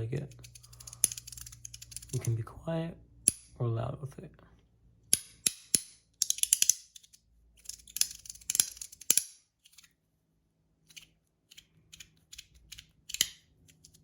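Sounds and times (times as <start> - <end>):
magnetic pieces snapping together: 5.1 - 9.9.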